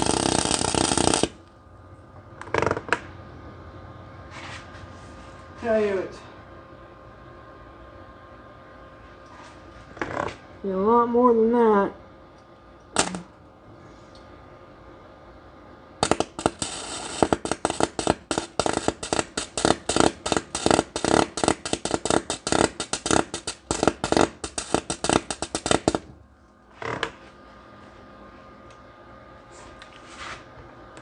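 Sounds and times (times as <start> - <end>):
welder arc crackling: 0.0 - 1.6, 2.2 - 3.2, 9.2 - 13.4, 16.0 - 27.2
faint steady hum: 0.0 - 31.0.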